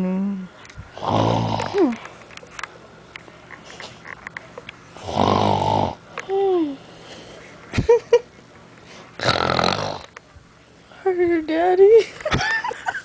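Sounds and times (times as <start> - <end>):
person snoring: 0.9 - 2.0, 5.0 - 6.0, 9.2 - 10.1.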